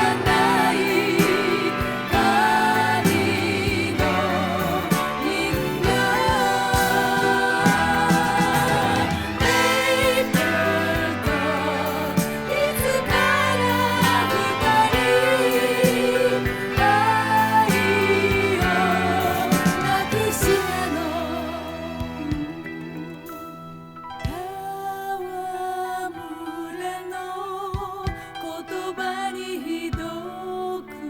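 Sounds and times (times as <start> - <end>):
women singing with vibrato: 0.0 - 23.6, 24.2 - 31.0
pop band with bass and drums: 0.0 - 24.6.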